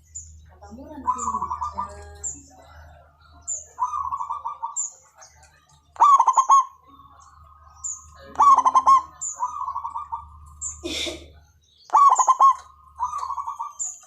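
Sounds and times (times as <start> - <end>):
faint low hum: 0.0 - 14.0
dove cooing: 0.8 - 2.4, 3.8 - 4.9, 6.0 - 7.4, 8.3 - 11.1, 11.9 - 14.0.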